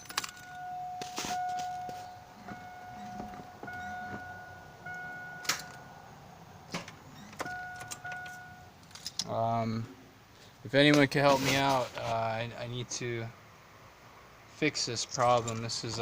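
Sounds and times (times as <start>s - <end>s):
electronic warning tone beeping: 0.0s - 6.0s, 7.2s - 8.7s.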